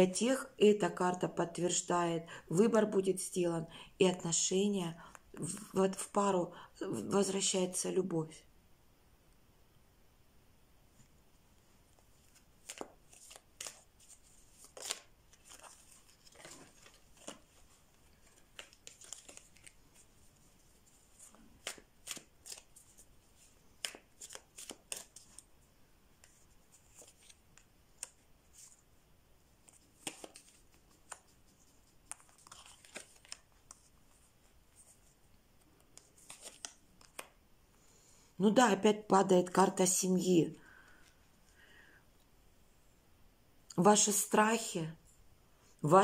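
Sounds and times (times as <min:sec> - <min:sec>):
cards being shuffled: 0:11.9 - 0:25.5, 0:26.2 - 0:28.8, 0:29.6 - 0:37.4.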